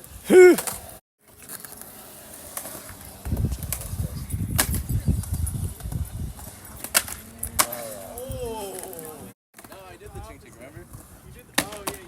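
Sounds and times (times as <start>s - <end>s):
skateboard wheels rolling over pavement: 0.0s - 12.0s
skateboard clack: 4.6s - 10.0s, 10.9s - 12.0s.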